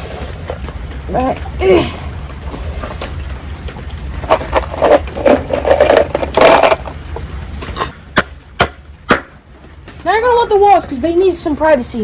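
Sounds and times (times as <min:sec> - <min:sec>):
sharp wooden knocks: 0:08.1 - 0:09.4.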